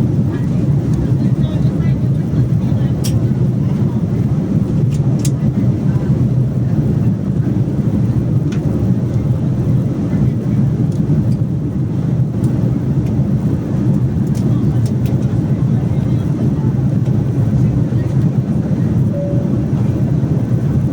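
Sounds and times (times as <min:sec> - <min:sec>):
jet engines rumbling: 0:00.0 - 0:20.9
faint clicks and rattles: 0:13.9 - 0:15.4.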